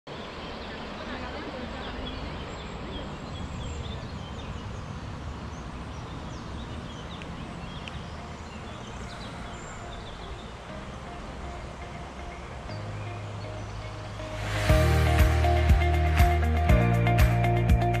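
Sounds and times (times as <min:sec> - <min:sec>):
small birds chirping: 0:00.1 - 0:16.6
steady rushing background: 0:07.4 - 0:18.0.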